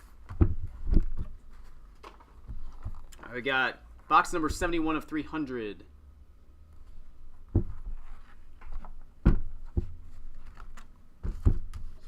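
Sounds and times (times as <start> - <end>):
cardboard box knocks and thumps: 0.2 - 1.4, 7.5 - 8.0, 8.8 - 10.2, 11.2 - 12.0.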